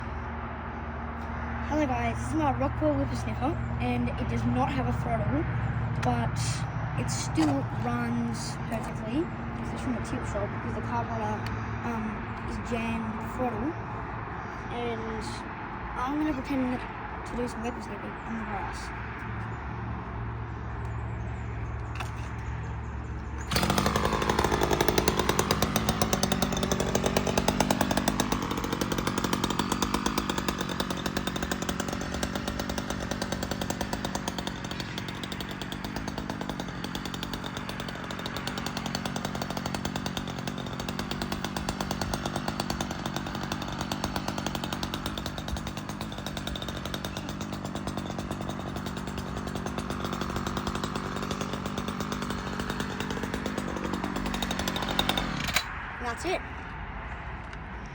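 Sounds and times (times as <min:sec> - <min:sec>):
string trimmer engine running: 0:00.0 - 0:57.9.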